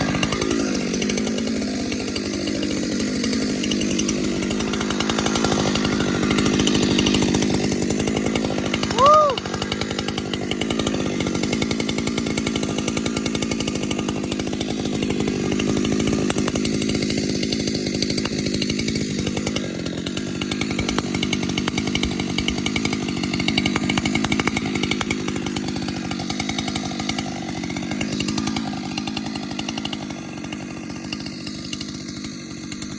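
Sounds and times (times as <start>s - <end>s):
chainsaw running at high speed: 0.0s - 32.9s.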